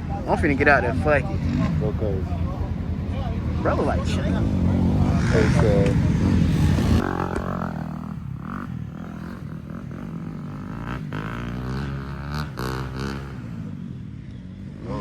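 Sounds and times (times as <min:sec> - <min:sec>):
dirt bike engine revving: 0:00.0 - 0:13.8.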